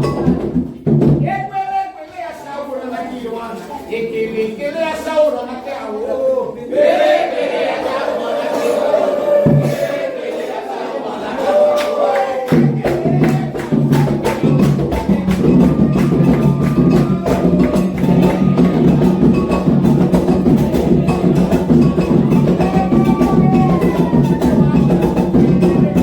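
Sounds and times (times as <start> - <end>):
hand drums playing fast rhythm: 0.0 - 1.4, 9.4 - 9.9, 12.4 - 26.0
voices singing: 5.6 - 26.0.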